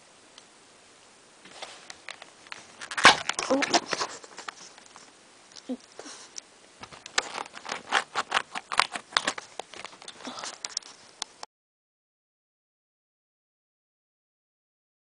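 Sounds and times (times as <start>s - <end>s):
plastic packaging clicks and crinkles: 1.9s - 5.8s, 6.8s - 11.4s.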